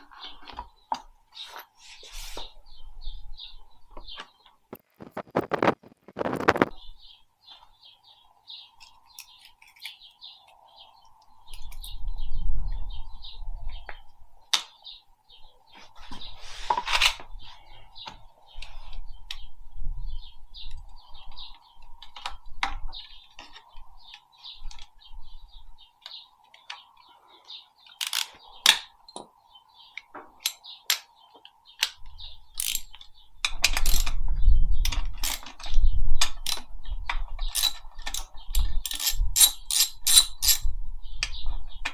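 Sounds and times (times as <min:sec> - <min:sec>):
small birds chirping: 0:00.0 - 0:41.9
sharp clicks and clinks: 0:32.6 - 0:34.2, 0:37.5 - 0:41.9.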